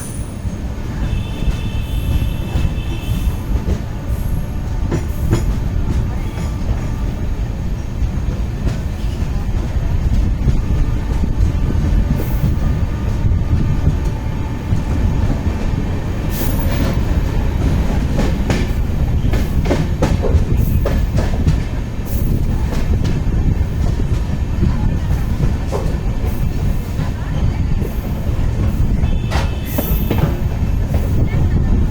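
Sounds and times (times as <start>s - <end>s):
train wheels rumbling on rails: 0.0s - 31.9s.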